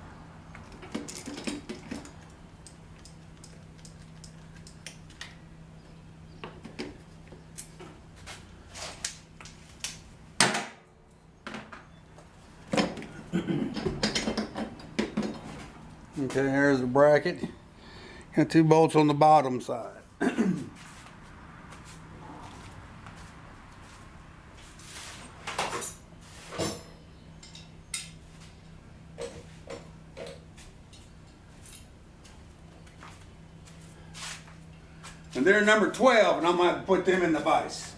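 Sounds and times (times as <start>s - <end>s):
faint steady hum: 0.0s - 24.8s.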